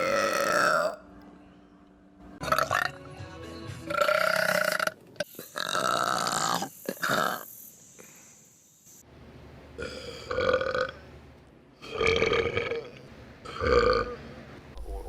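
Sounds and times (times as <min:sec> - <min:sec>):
person burping: 0:00.0 - 0:01.0, 0:02.4 - 0:02.9, 0:03.9 - 0:04.9, 0:09.8 - 0:11.0.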